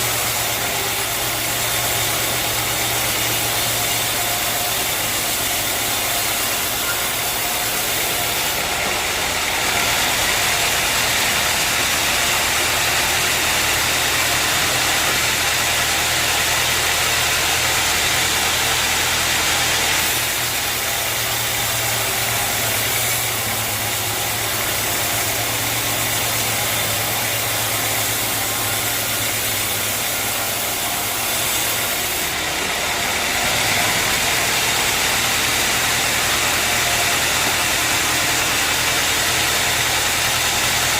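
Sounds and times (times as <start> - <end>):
sawmill machinery hiss: 0.0 - 40.9.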